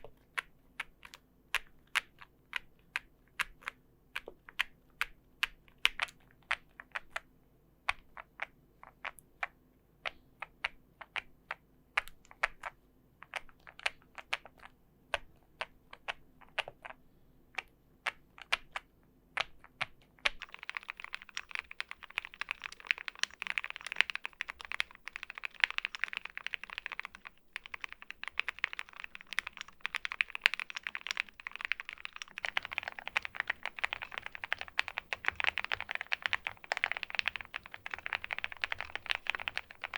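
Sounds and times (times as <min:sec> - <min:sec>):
mechanical keyboard typing: 0:19.8 - 0:39.9.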